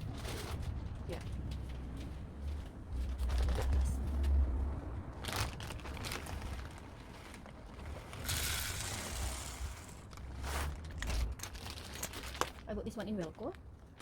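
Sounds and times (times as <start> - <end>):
packaging rustling and crinkling: 5.1 - 14.0.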